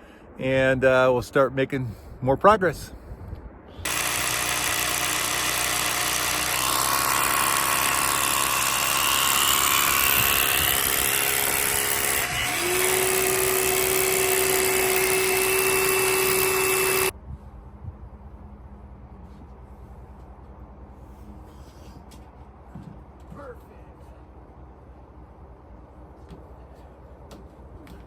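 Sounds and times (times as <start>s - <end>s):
snow blower engine running: 3.9s - 17.1s
high whine: 6.4s - 17.1s.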